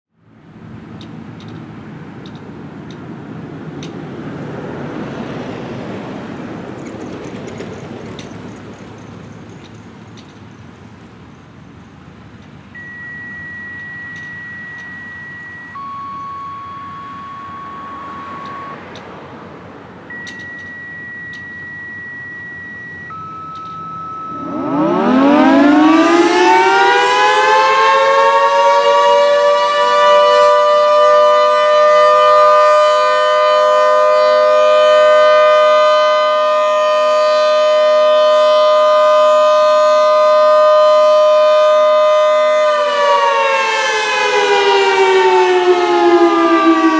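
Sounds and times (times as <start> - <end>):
tornado siren howling: 3.5 - 10.2, 12.7 - 46.9
long steady beeps: 12.7 - 27.8.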